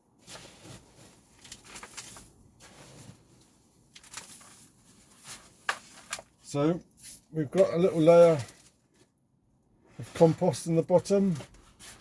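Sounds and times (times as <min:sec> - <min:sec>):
hands rustling and scraping compost: 0:00.1 - 0:06.2.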